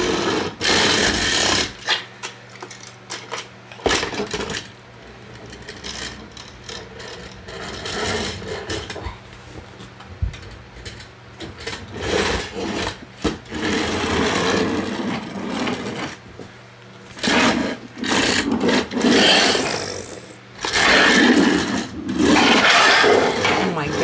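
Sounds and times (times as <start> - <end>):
toy gear motor whirring: 0.0 - 2.0, 5.5 - 9.0, 17.2 - 24.0.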